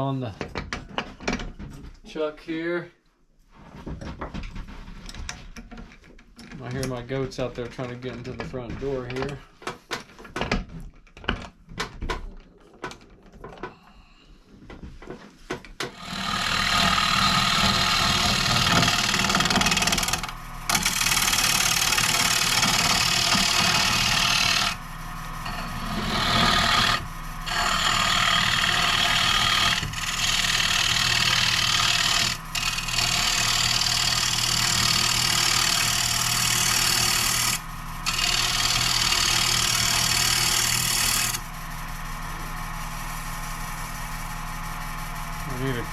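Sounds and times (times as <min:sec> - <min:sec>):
lathe humming: 0:15.8 - 0:45.9
turning tool cutting wood: 0:15.8 - 0:45.9.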